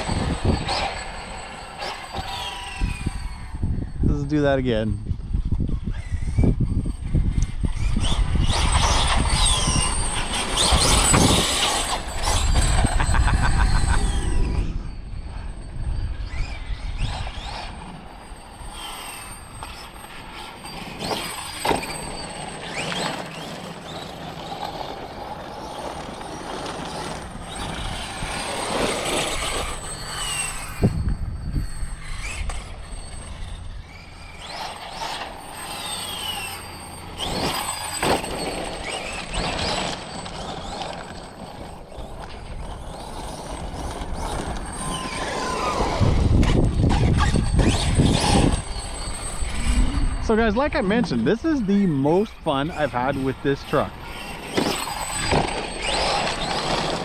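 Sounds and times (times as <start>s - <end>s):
rc truck motor whine: 0.0s - 57.0s
tire noise: 0.0s - 57.0s.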